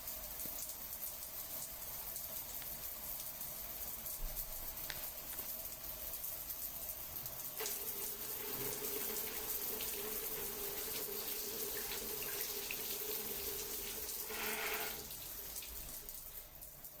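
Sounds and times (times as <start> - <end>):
running water splashing: 7.2 - 17.0.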